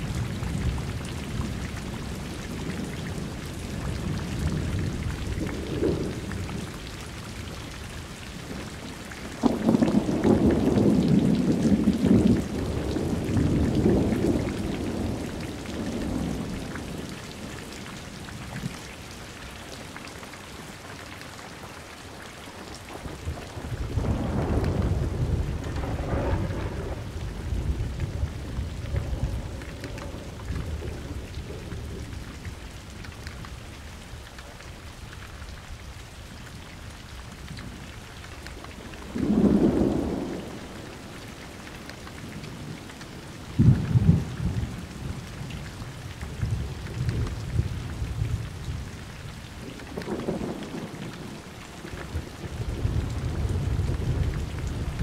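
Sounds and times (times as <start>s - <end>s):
rolling thunder: 0.0s - 6.8s, 23.0s - 32.6s, 39.0s - 40.8s, 43.6s - 45.3s, 49.9s - 55.0s
steady rain: 0.0s - 55.0s
sharp thunderclap: 23.9s - 30.2s.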